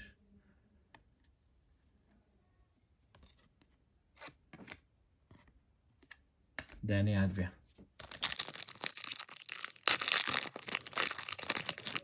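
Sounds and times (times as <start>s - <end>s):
trading cards rustling: 7.9s - 12.0s.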